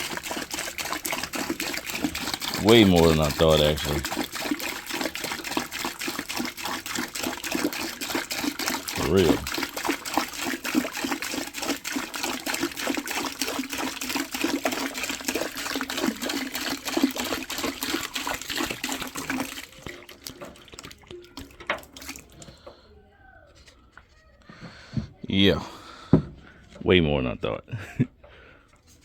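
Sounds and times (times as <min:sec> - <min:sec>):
water dripping: 0:00.0 - 0:22.7
water gushing into a bucket: 0:00.0 - 0:22.8.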